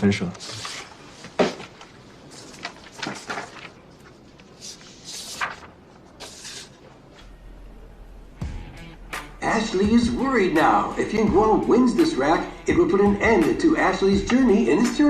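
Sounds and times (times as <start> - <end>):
paper pages rustling: 0.3 - 7.3.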